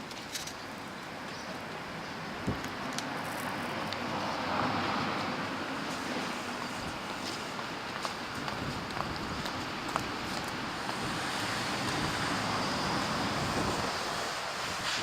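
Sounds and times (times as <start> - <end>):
traffic noise: 0.0 - 15.0
vehicle passing: 3.1 - 7.8.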